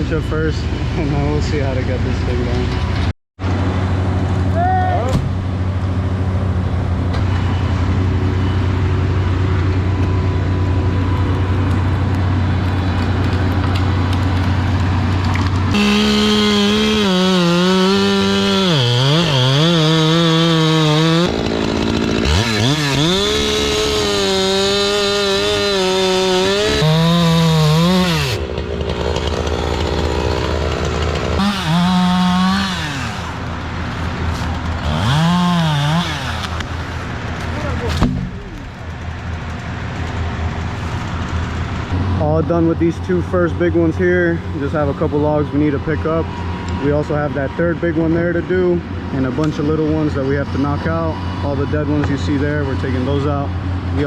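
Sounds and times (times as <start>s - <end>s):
engine low hum: 0.0s - 54.0s
chainsaw cutting wood: 11.5s - 38.7s.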